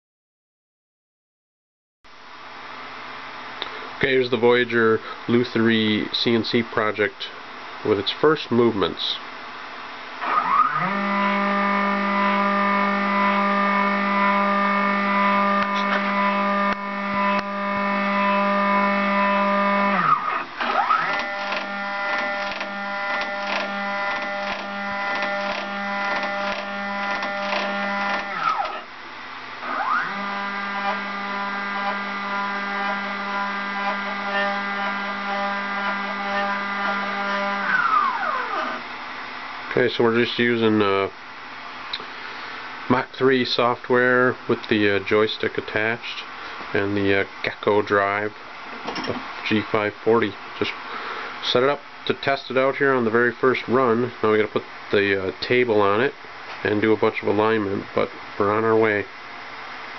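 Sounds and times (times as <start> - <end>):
stepper motor whine: 10.1 - 39.6.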